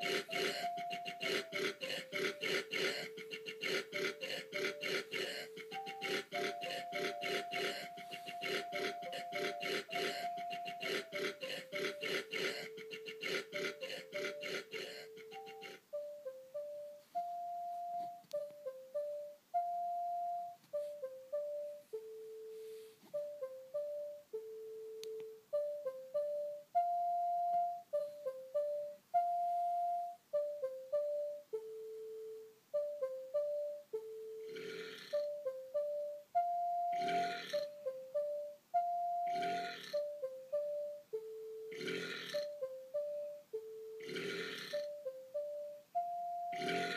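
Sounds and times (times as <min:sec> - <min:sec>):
synth melody of short notes: 0:00.0 - 0:01.7, 0:02.3 - 0:34.6, 0:35.2 - 0:46.9
person burping: 0:00.0 - 0:15.4, 0:41.7 - 0:42.5, 0:44.0 - 0:44.9, 0:46.5 - 0:46.9.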